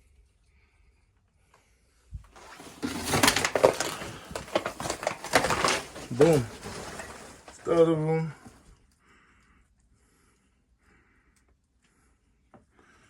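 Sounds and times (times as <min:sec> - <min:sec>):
footsteps on debris-strewn floor: 0:02.2 - 0:08.6.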